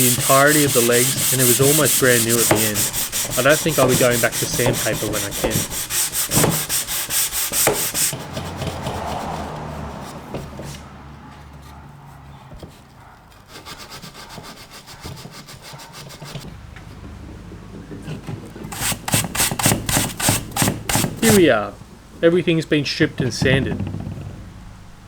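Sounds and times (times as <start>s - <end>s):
hand sanding wood: 0.0s - 10.9s, 13.5s - 16.5s, 18.6s - 21.7s.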